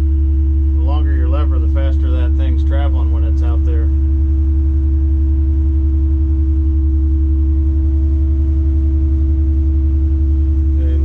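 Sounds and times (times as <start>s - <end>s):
crane engine droning: 0.0s - 11.0s
steady hum: 0.0s - 11.0s.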